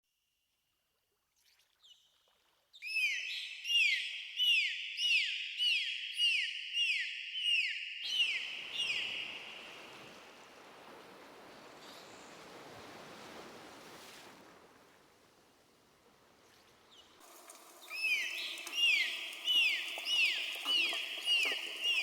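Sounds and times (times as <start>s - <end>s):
sea noise: 8.1s - 22.0s
dolphins whistling: 17.9s - 22.0s.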